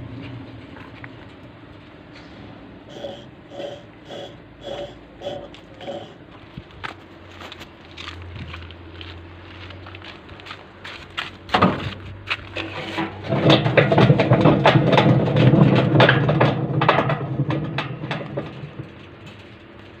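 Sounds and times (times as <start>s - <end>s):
clattering knocks: 12.6s - 19.8s
washing machine drum rumbling: 12.6s - 20.0s.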